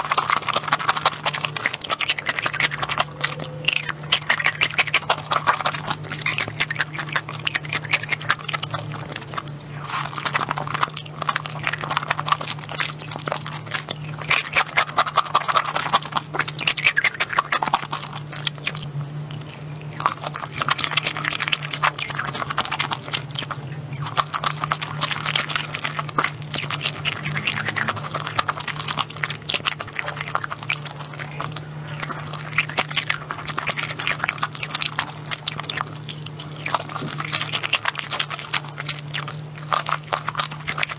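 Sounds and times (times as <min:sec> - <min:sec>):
chewing and crunching food: 0:00.0 - 0:40.9.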